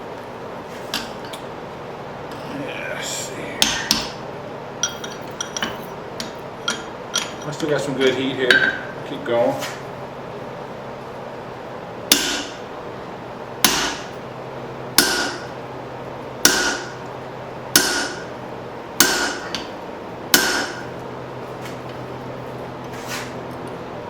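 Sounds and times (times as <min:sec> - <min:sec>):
steady low hum: 0:00.0 - 0:24.0
ringing hammer blows on steel: 0:16.4 - 0:17.0, 0:17.8 - 0:18.3, 0:20.4 - 0:21.0.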